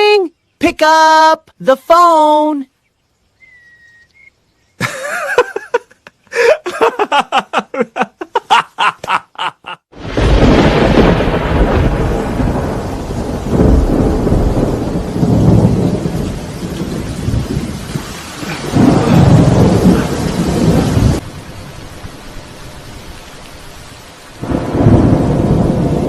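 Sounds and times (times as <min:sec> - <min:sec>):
steady rain: 0:00.0 - 0:26.0
rolling thunder: 0:09.9 - 0:23.2, 0:24.4 - 0:26.0.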